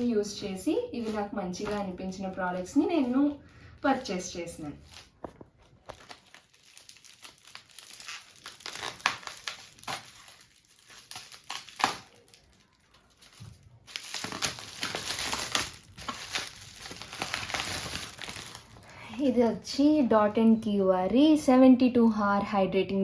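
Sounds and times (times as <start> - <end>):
packaging crinkling: 4.6 - 19.0.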